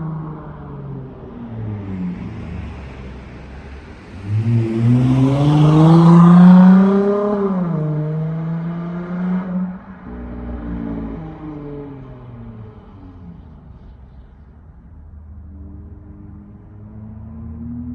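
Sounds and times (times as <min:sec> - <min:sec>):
car exhaust rumble under acceleration: 0:00.0 - 0:17.9.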